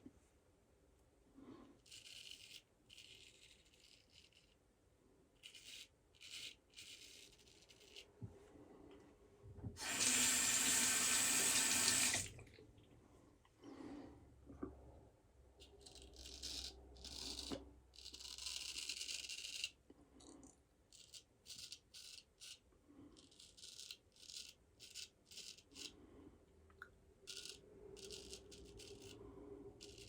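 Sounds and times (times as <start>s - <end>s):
razor scraping stubble: 1.8s - 4.6s, 5.4s - 8.1s.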